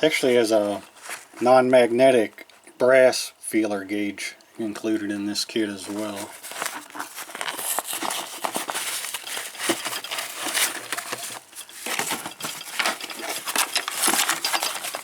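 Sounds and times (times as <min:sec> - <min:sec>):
plastic crinkling and rustling: 0:00.3 - 0:01.6, 0:05.6 - 0:15.0
tools clicking and clinking: 0:09.6 - 0:15.0.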